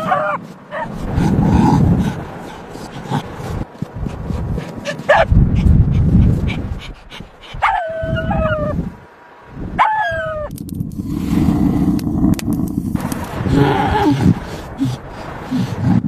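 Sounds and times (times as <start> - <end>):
low rumbling noise: 0.8 - 16.0
animal whining: 4.7 - 8.8.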